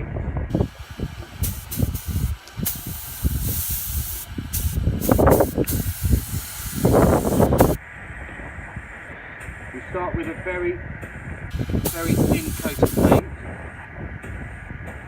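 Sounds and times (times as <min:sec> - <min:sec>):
paint spray gun hissing: 0:00.6 - 0:07.8, 0:11.5 - 0:13.2.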